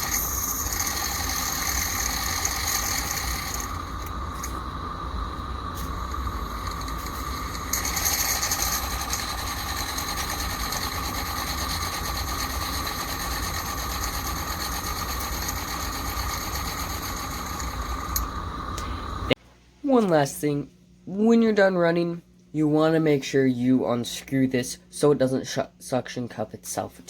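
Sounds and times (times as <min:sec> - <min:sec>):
model steam locomotive chuffing: 0:00.0 - 0:19.3
steam hissing: 0:00.0 - 0:19.4.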